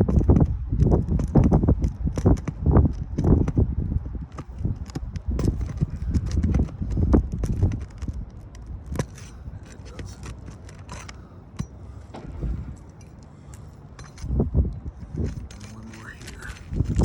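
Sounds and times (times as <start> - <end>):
footsteps on shingle roof: 0.0 - 17.0.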